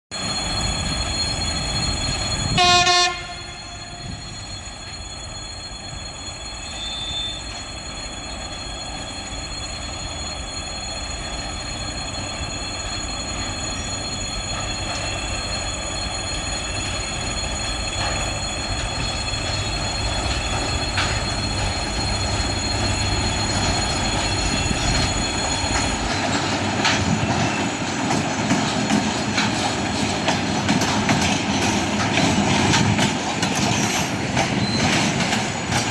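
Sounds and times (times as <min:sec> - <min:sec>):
locomotive engines and train running: 0:00.1 - 0:35.9
locomotive horn blast: 0:02.6 - 0:04.0.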